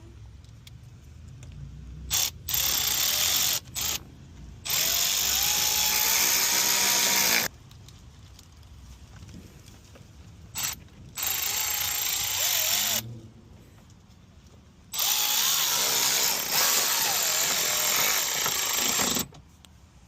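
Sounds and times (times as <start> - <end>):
cordless drill driving screws: 2.1 - 4.0, 4.7 - 7.5, 10.6 - 13.0, 15.0 - 19.3.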